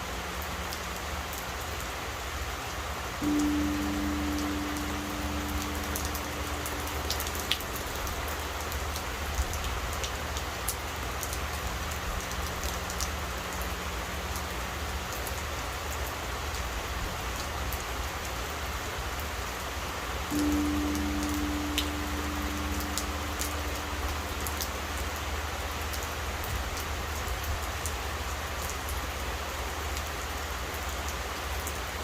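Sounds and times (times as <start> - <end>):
raindrops ticking close by: 0.0 - 32.0
steady rain: 0.0 - 32.0
deep temple bell hum: 3.2 - 9.6, 20.3 - 26.8.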